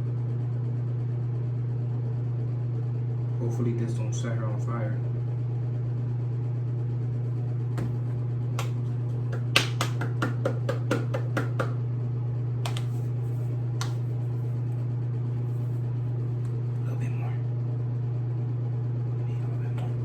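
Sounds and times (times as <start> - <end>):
steady low hum: 3.0 - 20.0
sharp clicks and taps: 12.7 - 12.9.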